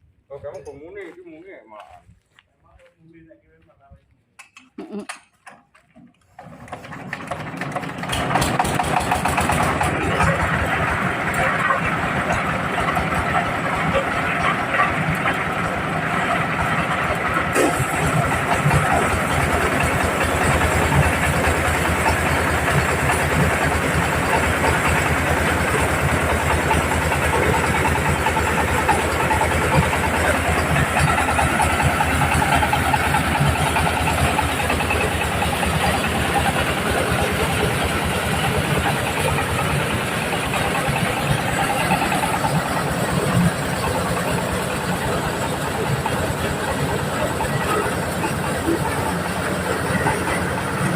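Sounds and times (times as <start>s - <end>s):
engine chugging: 6.3s - 50.9s
corn sheller rattling: 6.4s - 50.9s.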